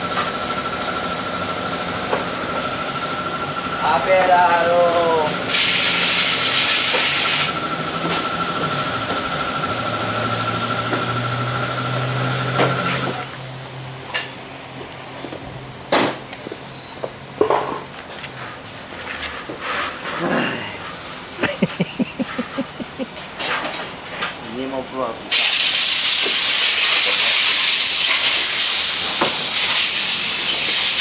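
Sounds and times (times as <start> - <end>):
loud air hiss: 5.5 - 7.6, 12.9 - 14.1, 25.3 - 31.0.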